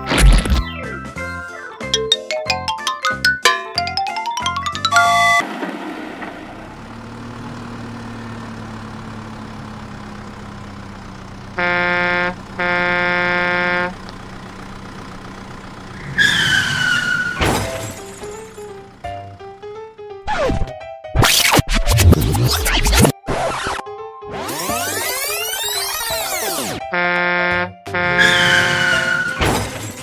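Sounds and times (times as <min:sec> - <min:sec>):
high tone sliding downward: 0:02.0 - 0:05.4
truck horn honking: 0:05.0 - 0:05.4, 0:09.8 - 0:19.9, 0:26.8 - 0:29.4
low engine hum: 0:05.1 - 0:20.2.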